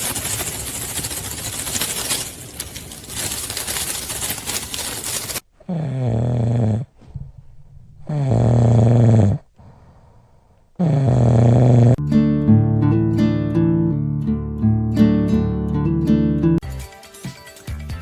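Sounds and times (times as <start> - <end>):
low snores: 5.6 - 12.0.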